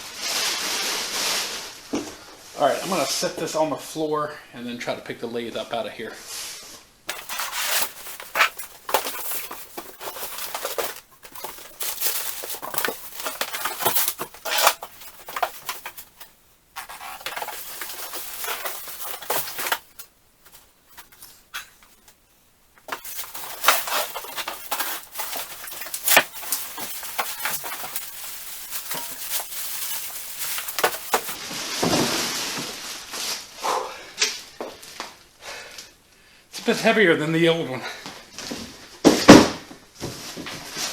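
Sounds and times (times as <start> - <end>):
cardboard rustling and scraping: 7.1 - 22.2, 22.8 - 33.5, 38.5 - 40.9.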